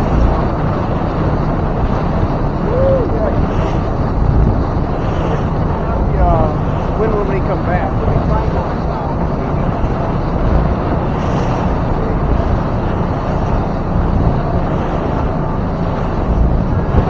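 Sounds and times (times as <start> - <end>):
motorboat engine and water rumble: 0.0 - 17.0
wind buffeting microphone: 0.0 - 17.0.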